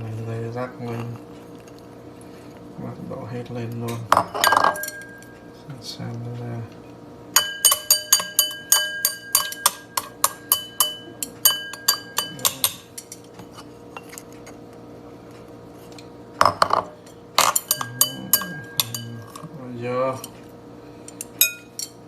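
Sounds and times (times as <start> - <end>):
utensil clinking on a dish: 3.6 - 5.4, 7.4 - 14.6, 15.9 - 22.0.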